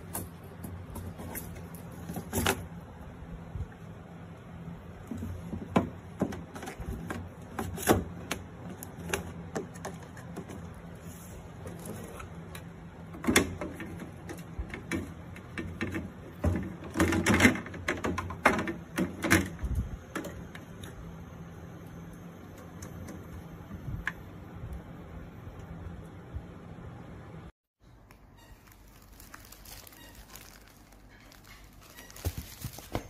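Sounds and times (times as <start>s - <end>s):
hands handling objects: 28.0s - 33.0s.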